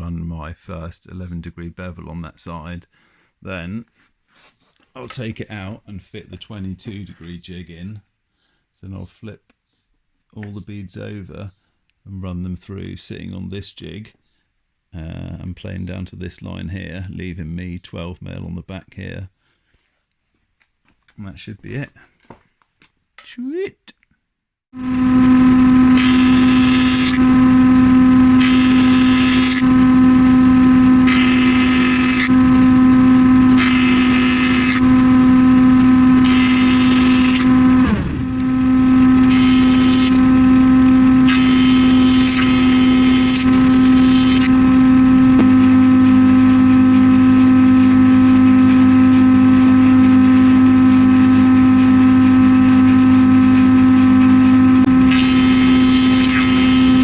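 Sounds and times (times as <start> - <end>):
planer cutting timber: 24.8 - 57.0
planing machine humming: 24.8 - 57.0.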